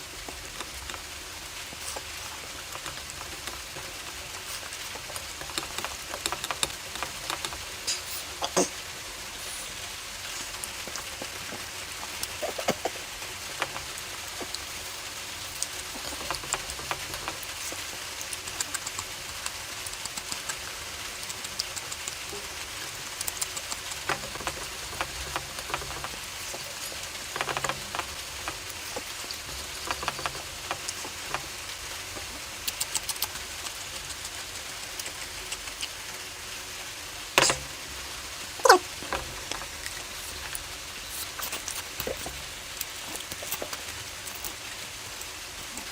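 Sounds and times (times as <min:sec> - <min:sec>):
wet chewing and lip smacks: 0:00.1 - 0:36.3, 0:38.6 - 0:45.9.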